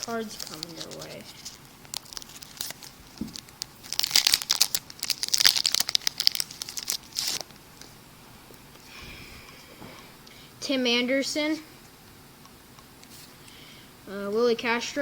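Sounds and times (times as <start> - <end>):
plastic wrapper crinkling: 0.0 - 7.9.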